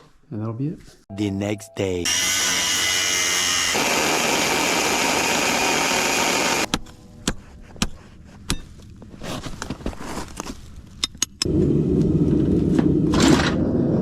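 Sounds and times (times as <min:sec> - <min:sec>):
loud machine hiss and whine: 0:02.1 - 0:06.7.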